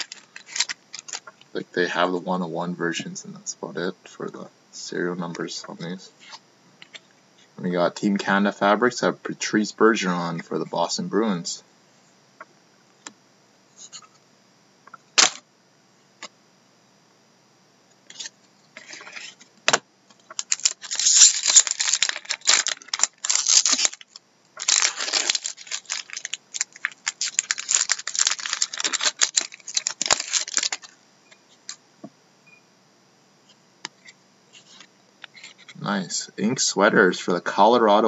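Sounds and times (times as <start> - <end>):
wrapper tearing and crinkling: 0.0 - 1.2, 20.3 - 30.9.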